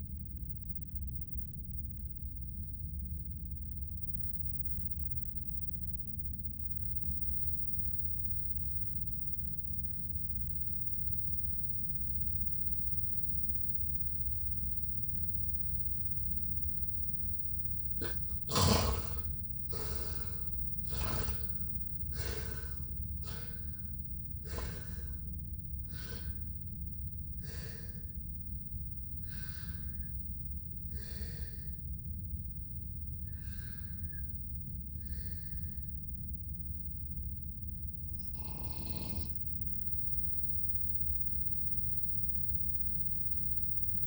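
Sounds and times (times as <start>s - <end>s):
low hum: 14.0s - 44.0s
person breathing noisily: 18.0s - 26.5s, 27.4s - 28.2s, 29.2s - 30.1s, 30.9s - 31.8s, 33.3s - 34.3s, 38.1s - 39.4s.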